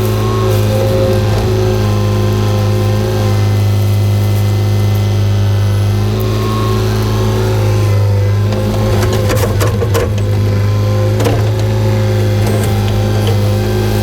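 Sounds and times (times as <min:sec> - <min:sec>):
diesel engine running: 0:00.0 - 0:14.0
knocks and scrapes: 0:08.4 - 0:14.0.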